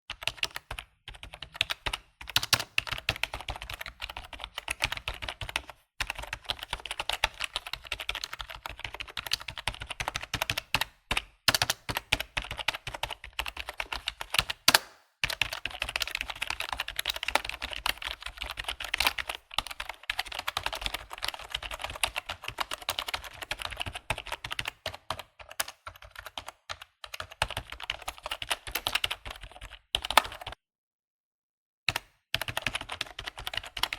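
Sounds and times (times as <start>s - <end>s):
keyboard keystrokes clacking: 0.2s - 26.4s.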